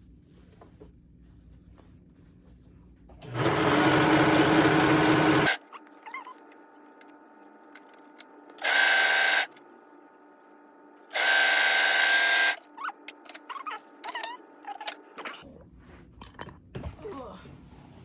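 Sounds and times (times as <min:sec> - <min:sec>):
overlock sewing machine running: 0:03.2 - 0:05.6.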